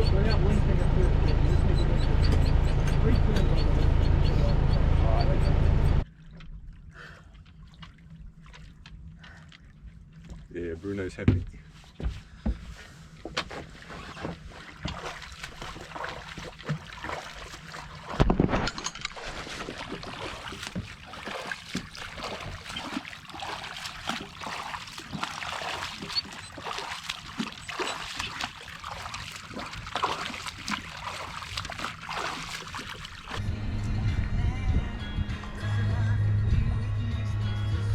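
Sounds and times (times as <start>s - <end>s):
water splashing against boat hull: 13.2s - 33.4s.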